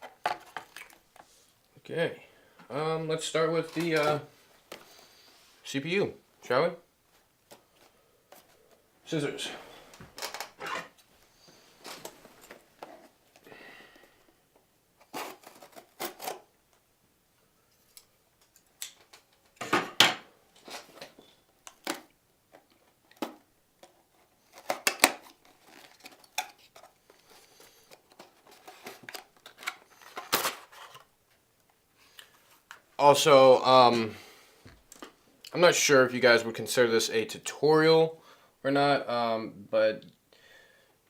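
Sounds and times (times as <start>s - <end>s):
scissors cutting packaging: 15.0s - 16.4s
packaging rustling: 15.0s - 16.5s, 23.1s - 31.1s.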